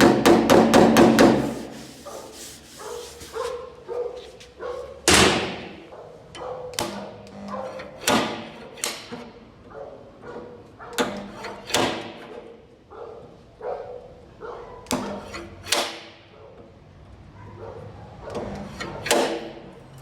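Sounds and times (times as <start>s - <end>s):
hammer striking metal panel: 0.0s - 1.7s, 5.1s - 5.8s, 8.0s - 9.1s.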